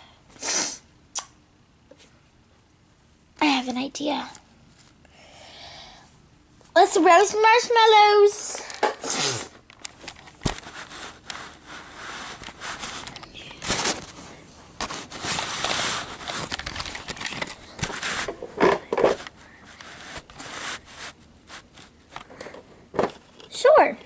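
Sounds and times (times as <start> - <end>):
toys rustling and scraping: 6.6 - 23.9.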